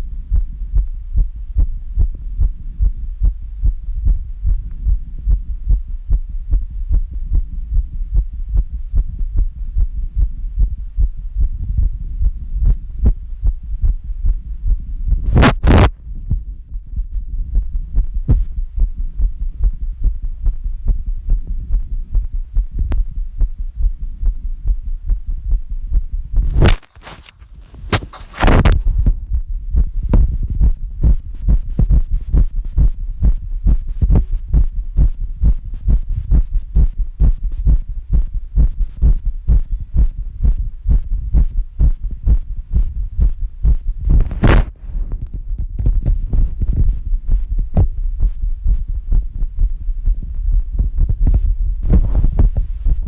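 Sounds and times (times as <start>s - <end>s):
heartbeat thumps: 0.0s - 53.0s
phone handling noise: 26.6s - 28.8s.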